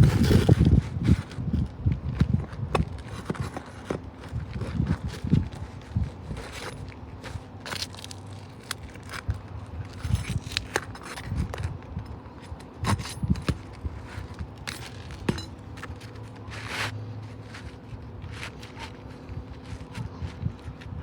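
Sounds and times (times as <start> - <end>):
hand tools scraping on shingles: 0.0 - 1.4, 12.4 - 20.6.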